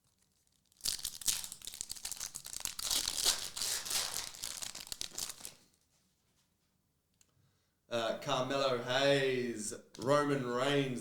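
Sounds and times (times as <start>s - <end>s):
foil wrapper crinkling: 0.0s - 5.8s.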